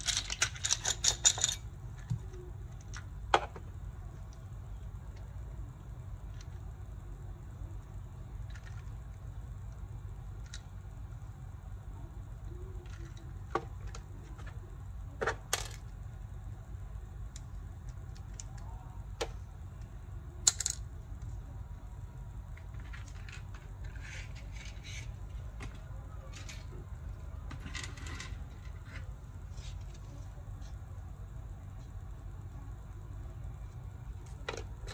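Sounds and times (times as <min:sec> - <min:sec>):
steady low hum: 0:00.0 - 0:34.9.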